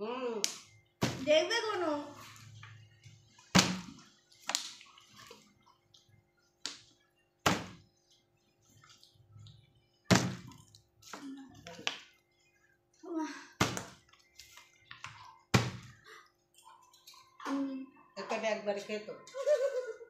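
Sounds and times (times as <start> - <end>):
water sloshing in bottle: 0.7 - 12.6.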